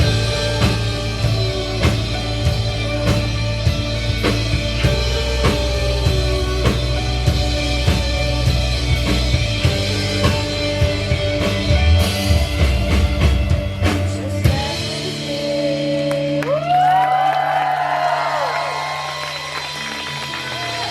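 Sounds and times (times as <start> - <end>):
live rock band playing: 0.0 - 17.3, 18.2 - 20.9
audience cheering and whooping: 16.4 - 20.9.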